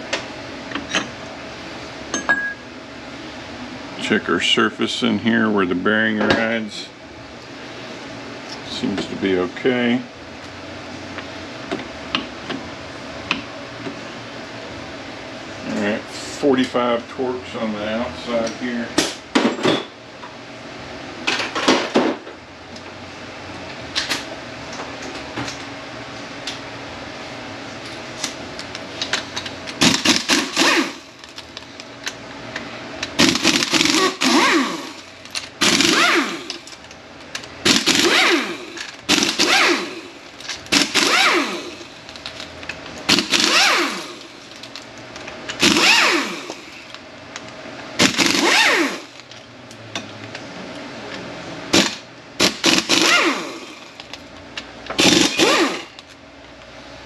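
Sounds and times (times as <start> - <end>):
power tool bursts: 29.8 - 31.1, 33.2 - 36.7, 37.6 - 42.0, 43.1 - 44.4, 45.6 - 46.9, 48.0 - 49.2, 51.7 - 54.0, 55.0 - 56.0.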